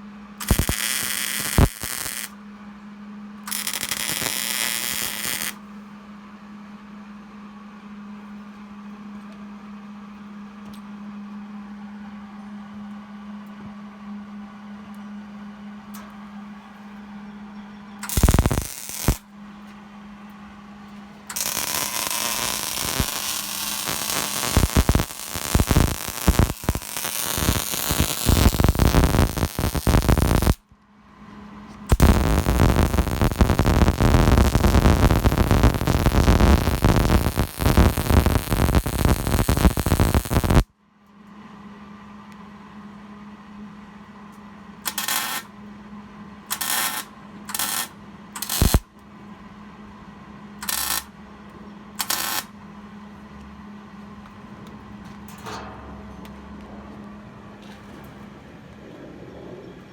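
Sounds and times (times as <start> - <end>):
steady electrical hum: 0.0 - 59.9
arc welding crackle: 0.4 - 2.4, 3.5 - 5.6, 18.0 - 19.2, 21.3 - 30.6, 31.9 - 40.7, 44.9 - 45.5, 46.5 - 48.9, 50.6 - 51.1, 52.0 - 52.5.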